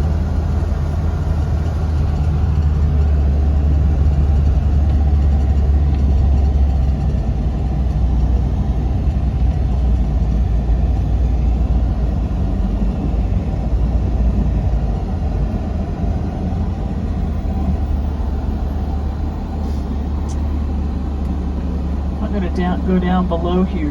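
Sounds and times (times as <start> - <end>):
road noise: 0.0 - 23.9
vehicle engine drone: 0.0 - 23.9.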